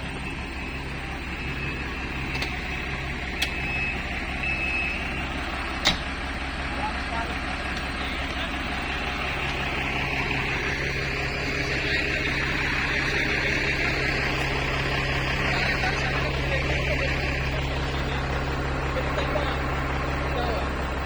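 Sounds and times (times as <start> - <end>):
diesel engine droning: 0.0 - 21.0.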